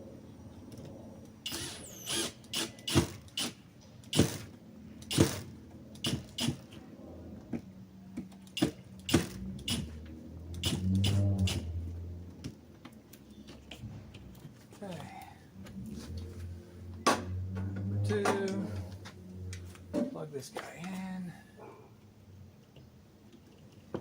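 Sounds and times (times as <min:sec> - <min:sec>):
low hum: 0:06.8 - 0:20.5
sharp clicks and knocks of hardware: 0:10.5 - 0:11.6.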